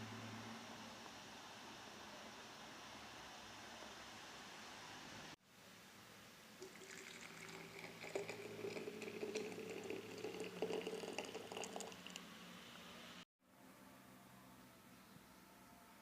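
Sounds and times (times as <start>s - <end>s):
liquid pouring into container: 6.6s - 12.2s.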